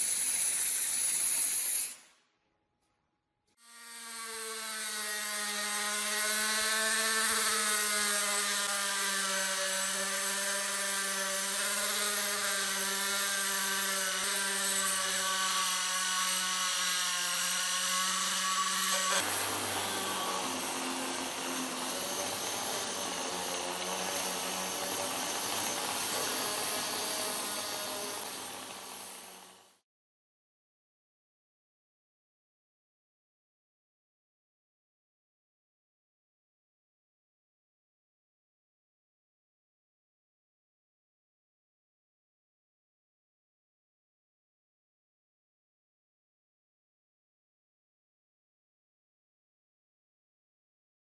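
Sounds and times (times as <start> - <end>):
power tool motor humming: 3.6 - 29.7.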